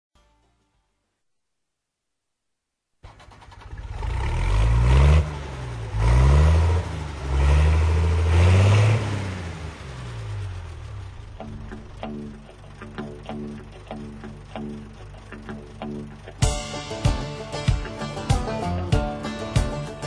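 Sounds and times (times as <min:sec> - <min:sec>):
vehicle engine revving: 0:03.0 - 0:16.4.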